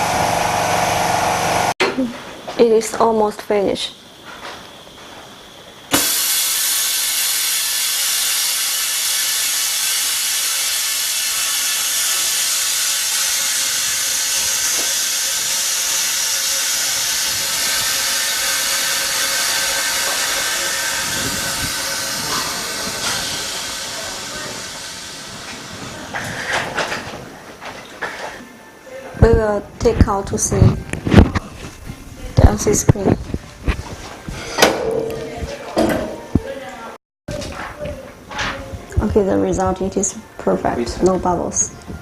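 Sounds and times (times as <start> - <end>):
compressed air hissing: 5.9 - 26.5.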